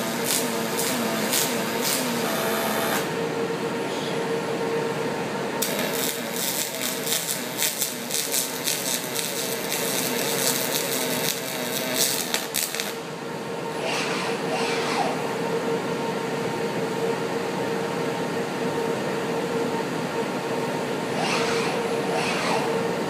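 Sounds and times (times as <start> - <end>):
welding arc crackling: 0.0 - 3.1, 5.6 - 13.0
steady machine hum: 0.0 - 23.0.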